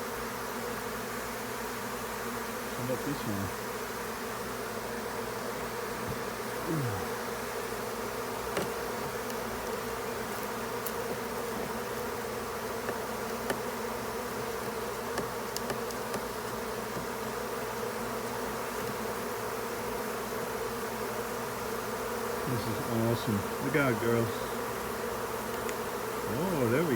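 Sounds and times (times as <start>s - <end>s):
honeybees buzzing: 0.0s - 26.9s
nearer bee buzz dropping in pitch: 0.0s - 26.9s.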